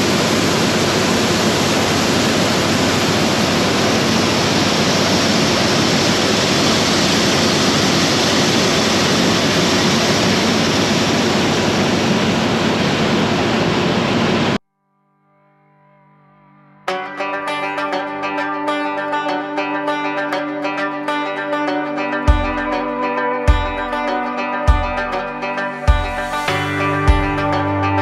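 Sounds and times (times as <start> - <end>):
combine harvester roaring: 0.0 - 14.6, 25.0 - 28.0.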